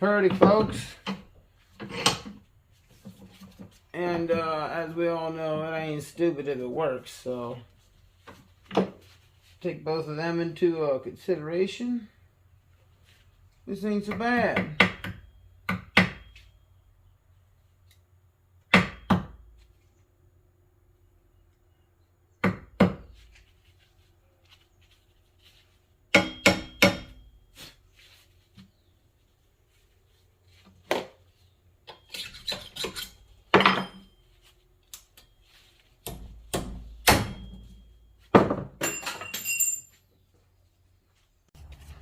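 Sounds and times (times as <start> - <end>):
metal tools striking metal: 31.9 - 34.2, 38.8 - 40.0
metallic ring: 31.9 - 34.5, 37.0 - 40.0.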